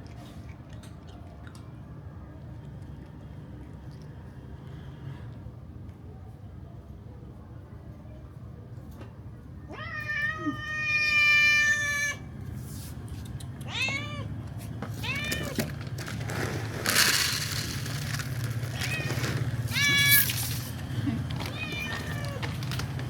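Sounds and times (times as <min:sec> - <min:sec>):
cats meowing: 0:09.6 - 0:12.3, 0:13.4 - 0:16.1, 0:18.6 - 0:23.0.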